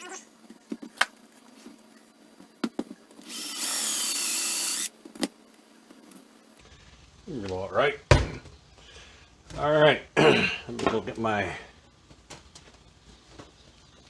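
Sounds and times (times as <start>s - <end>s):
electric drill whining: 3.2s - 4.9s.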